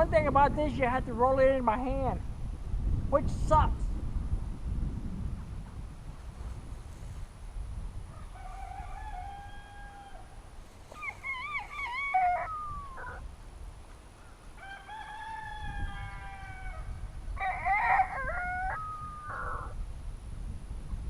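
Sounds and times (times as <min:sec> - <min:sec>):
rooster crowing: 0:08.1 - 0:10.4, 0:11.0 - 0:13.2, 0:14.6 - 0:19.8.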